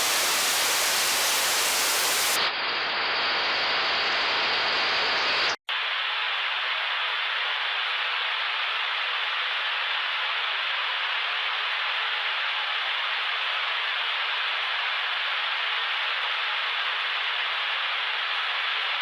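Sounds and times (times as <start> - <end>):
white static hiss: 0.0 - 2.4.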